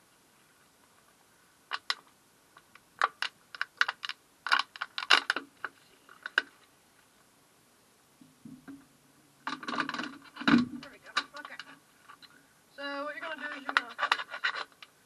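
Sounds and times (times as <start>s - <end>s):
plastic bottle crackling: 3.0s - 6.6s, 13.3s - 14.9s.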